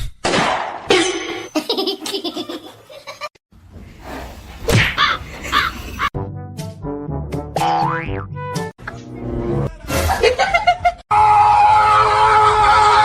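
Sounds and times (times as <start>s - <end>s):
person laughing: 1.6s - 3.3s, 5.2s - 6.1s, 10.0s - 11.0s.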